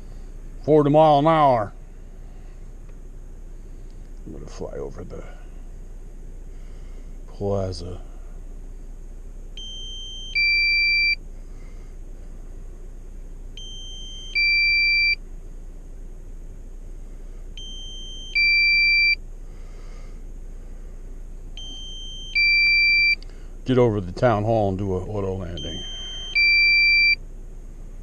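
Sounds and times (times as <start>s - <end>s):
steady low hum: 0.0s - 28.0s
two-note electronic warning beep: 9.6s - 11.2s, 13.6s - 15.2s, 17.6s - 19.2s, 21.6s - 23.2s, 25.5s - 27.2s.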